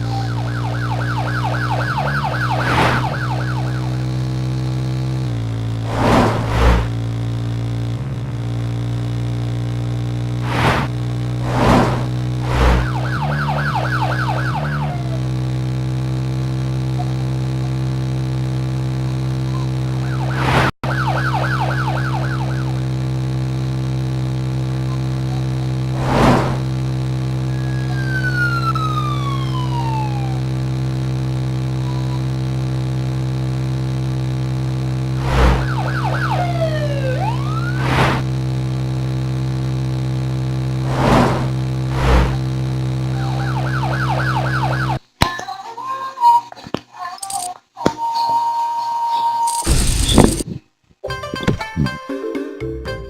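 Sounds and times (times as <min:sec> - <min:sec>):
siren-like wailing: 0:00.0 - 0:05.1, 0:12.4 - 0:16.0, 0:19.5 - 0:23.2, 0:27.3 - 0:32.6, 0:35.0 - 0:38.3, 0:43.1 - 0:45.0
steady low drone: 0:40.6 - 0:43.1.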